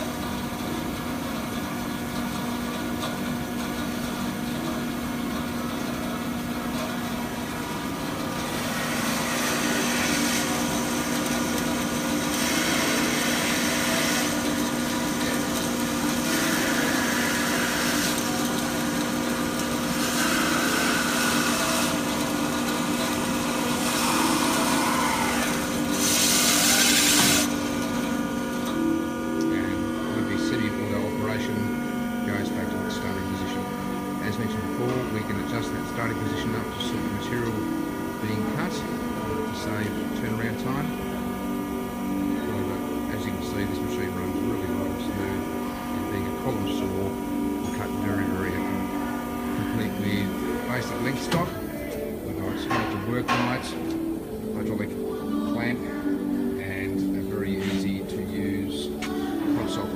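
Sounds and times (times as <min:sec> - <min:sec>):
bandsaw motor hum: 0:00.0 - 0:59.9
saw blade rasping through wood: 0:08.5 - 0:10.9, 0:12.3 - 0:14.4, 0:20.0 - 0:22.1.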